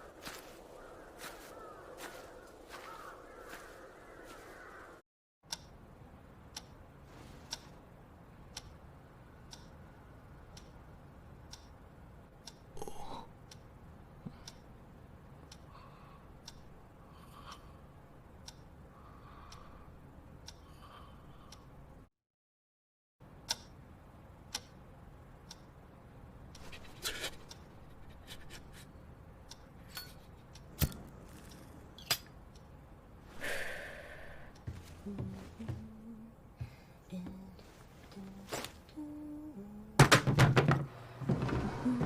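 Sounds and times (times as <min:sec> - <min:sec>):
crows cawing: 0:00.0 - 0:05.0
clock ticking: 0:05.5 - 0:07.7, 0:08.4 - 0:12.8, 0:13.4 - 0:15.7, 0:16.3 - 0:20.7, 0:23.3 - 0:28.2, 0:29.0 - 0:33.1
low steady hum: 0:23.2 - 0:40.2.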